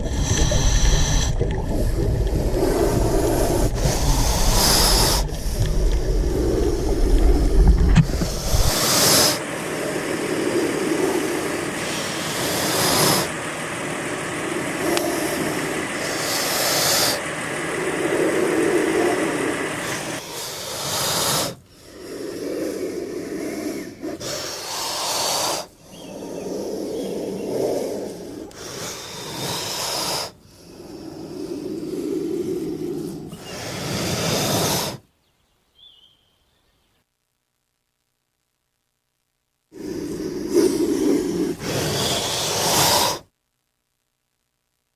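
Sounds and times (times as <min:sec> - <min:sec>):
steady rushing noise: 0:00.0 - 0:20.2
snake hissing: 0:00.0 - 0:35.1, 0:39.7 - 0:43.3.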